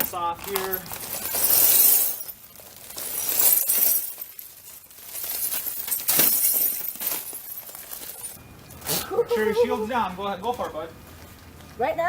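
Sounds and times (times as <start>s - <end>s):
broken glass crunching and scraping: 0.0s - 8.4s.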